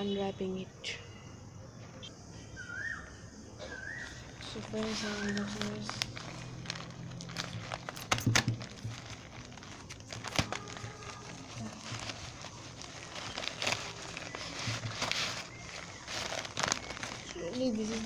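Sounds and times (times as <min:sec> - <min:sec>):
plastic wrapping crinkling: 0:03.7 - 0:18.0.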